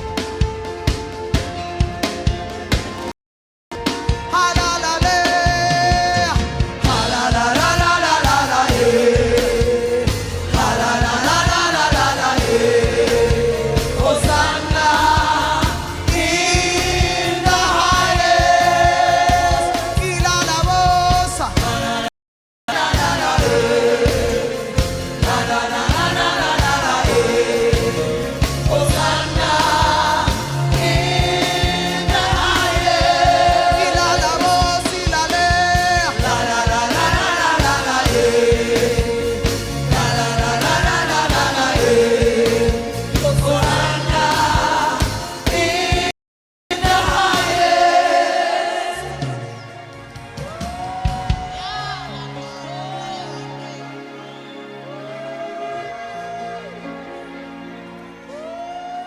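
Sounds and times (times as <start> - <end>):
instrumental accompaniment: 0.0 - 3.1, 3.7 - 22.1, 22.7 - 46.1
choir singing worship song: 4.4 - 22.1, 22.7 - 57.4.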